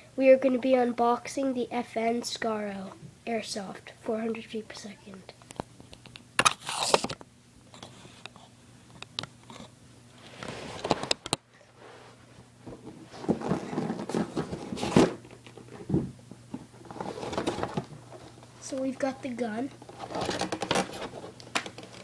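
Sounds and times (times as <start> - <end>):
packaging rustling and scraping: 6.5 - 7.2, 9.6 - 18.7, 19.7 - 22.0.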